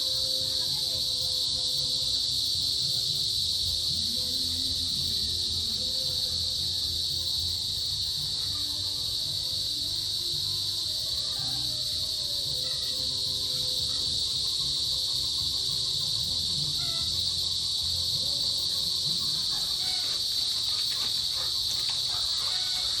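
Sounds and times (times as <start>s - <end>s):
cicadas buzzing: 0.0s - 23.0s.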